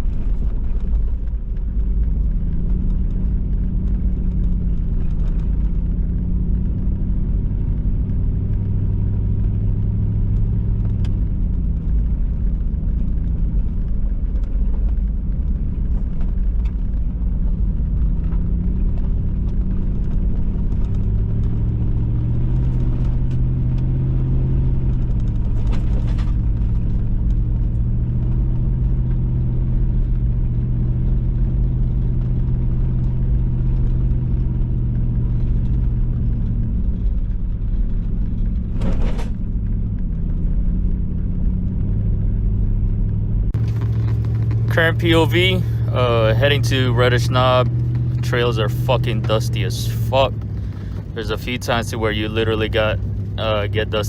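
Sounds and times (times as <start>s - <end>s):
vehicle engine running: 0.0s - 54.0s
tyre rumble on dirt: 34.8s - 42.0s, 43.5s - 49.5s
brief rattle: 38.6s - 39.5s.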